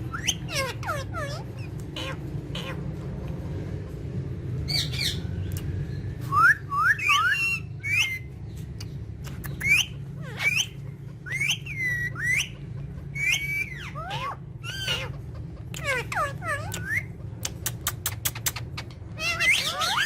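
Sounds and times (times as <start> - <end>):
parrot whistling calls: 0.0 - 2.8, 6.3 - 8.3, 9.5 - 15.2, 15.8 - 17.2, 18.2 - 20.0
steady low hum: 0.0 - 20.0.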